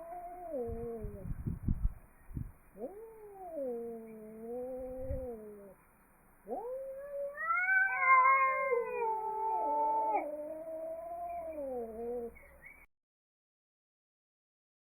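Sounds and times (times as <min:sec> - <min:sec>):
cats yowling: 0:00.0 - 0:01.2, 0:02.8 - 0:05.8, 0:06.5 - 0:12.5.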